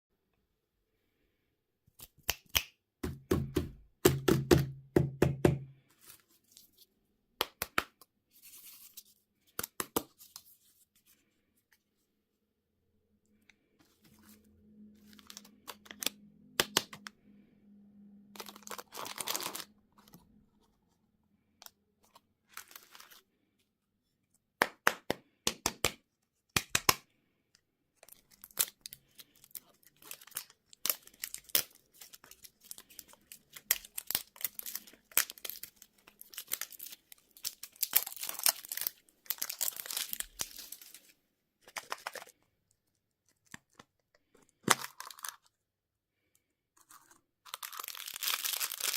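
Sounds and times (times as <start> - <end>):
packaging crinkling and tearing: 18.4 - 20.2, 22.4 - 23.2, 28.0 - 42.4, 46.8 - 48.9.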